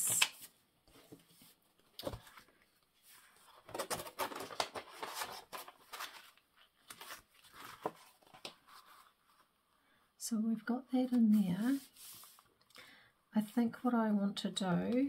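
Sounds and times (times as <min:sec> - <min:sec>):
paper rustling: 0:00.0 - 0:09.5, 0:11.3 - 0:12.5.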